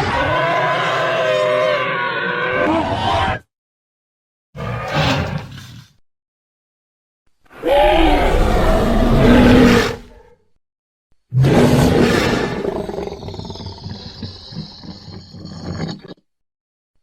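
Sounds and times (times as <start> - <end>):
dinosaur roar: 0.0 - 3.4, 7.5 - 10.4, 11.4 - 16.2.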